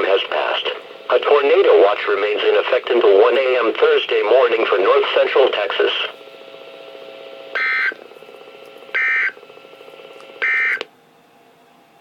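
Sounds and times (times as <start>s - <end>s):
steady hum: 0.0s - 12.0s
harsh digital squawks: 7.6s - 8.0s, 9.0s - 9.4s.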